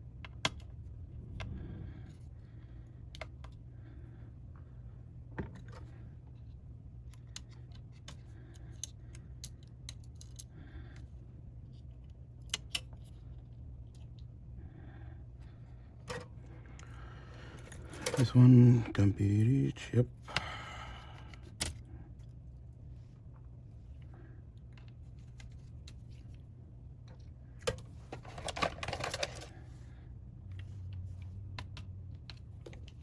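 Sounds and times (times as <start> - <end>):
low hum: 0.0 - 7.3.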